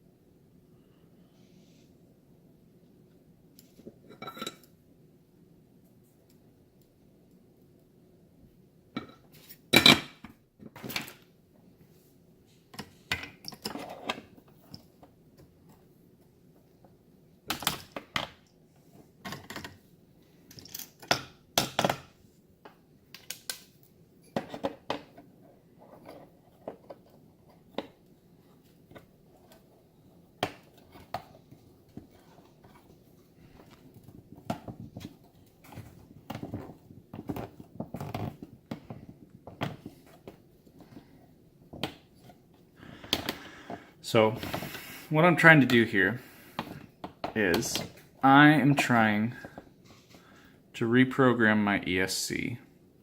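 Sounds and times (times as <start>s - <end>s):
small metal parts clinking: 20.5s - 21.2s.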